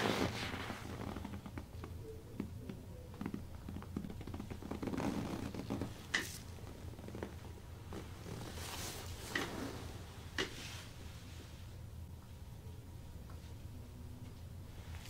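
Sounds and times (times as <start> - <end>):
hands rubbing skin and clothing: 0.0 - 1.9, 3.2 - 10.9
low room hum: 0.0 - 15.0.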